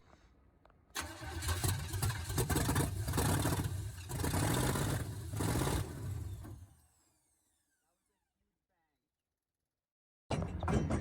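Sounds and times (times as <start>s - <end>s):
truck engine revving: 1.0s - 6.6s.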